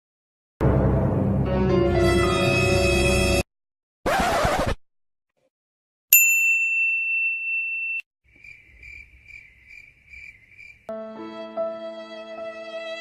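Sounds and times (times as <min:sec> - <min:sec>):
bright ding: 0:06.2 - 0:08.0
cricket-like chirping: 0:08.3 - 0:10.9.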